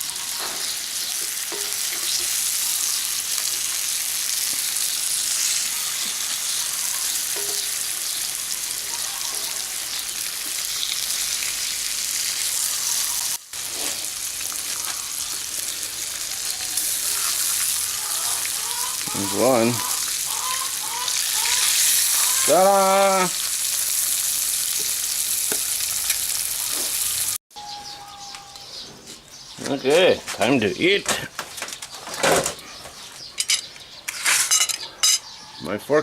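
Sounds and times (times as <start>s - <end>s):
eggs sizzling in a pan: 0.0s - 27.4s.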